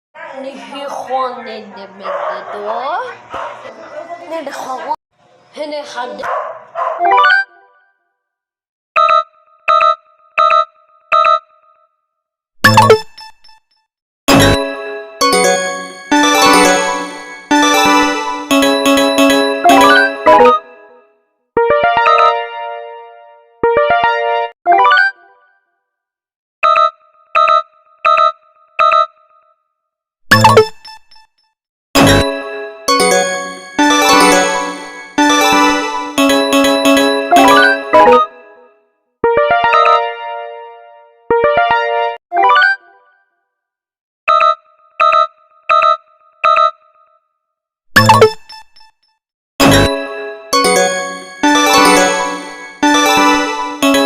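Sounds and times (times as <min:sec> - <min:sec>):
synth chord and notes: 0:14.3 - 0:21.0, 0:21.6 - 0:25.1, 0:32.0 - 0:42.6, 0:49.6 - 0:54.0.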